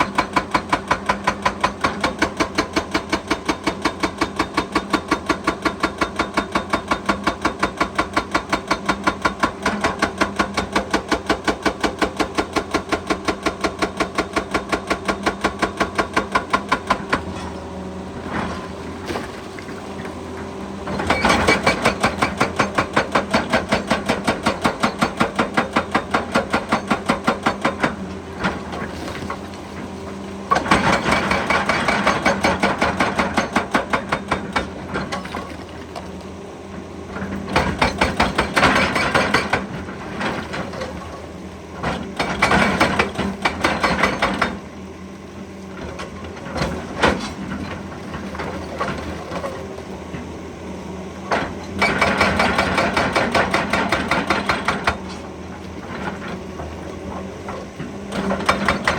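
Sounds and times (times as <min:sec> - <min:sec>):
excavator engine running: 0:00.0 - 0:58.9
hydraulic rock breaker hammering rock: 0:00.0 - 0:58.9.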